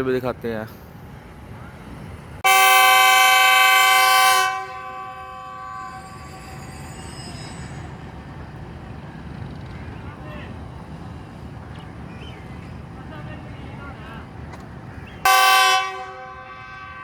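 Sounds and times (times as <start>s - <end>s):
train rumbling: 0.0s - 17.0s
train horn blast: 2.4s - 7.2s, 15.2s - 17.0s.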